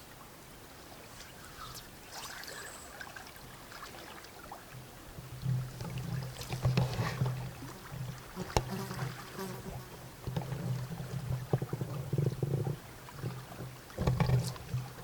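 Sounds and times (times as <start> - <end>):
water sloshing around legs: 1.2 - 4.8.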